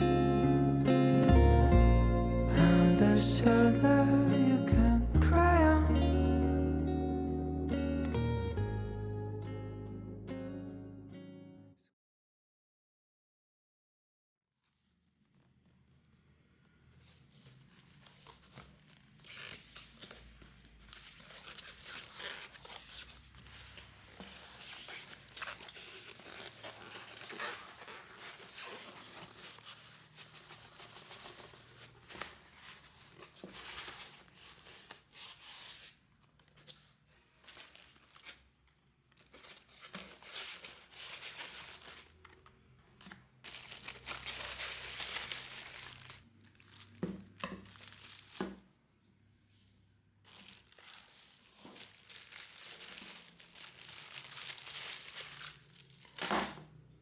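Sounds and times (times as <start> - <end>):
packaging crinkling and tearing: 17.4 - 48.7, 50.3 - 56.8.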